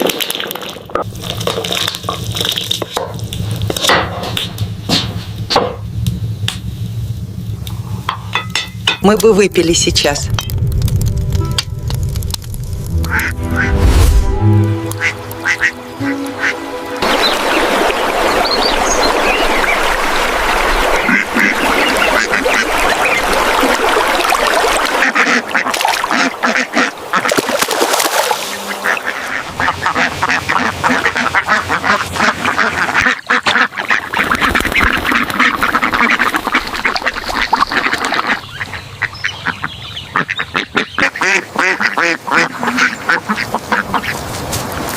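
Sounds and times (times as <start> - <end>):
music: 11.1 - 17.9
flock of ducks quacking: 12.9 - 13.7, 14.8 - 23.7, 24.8 - 27.6, 28.4 - 44.3.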